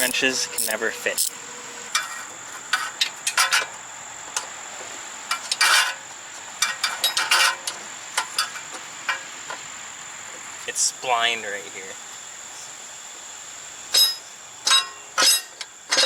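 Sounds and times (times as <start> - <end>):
wrench and brake parts clinking: 0.0 - 3.8, 5.3 - 6.0, 6.6 - 9.2, 13.9 - 16.0
insects droning: 0.0 - 16.0.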